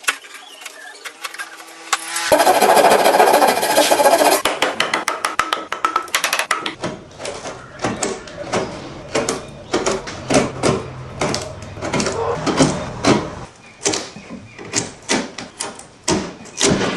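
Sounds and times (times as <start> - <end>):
hand tool scraping wood: 1.3 - 4.5.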